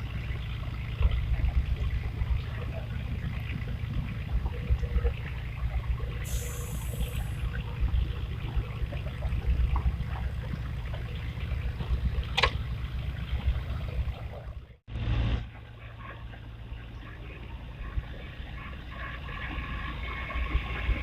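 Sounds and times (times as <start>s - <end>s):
steady low rumble: 0.0s - 21.0s
brief high hiss: 6.3s - 7.4s.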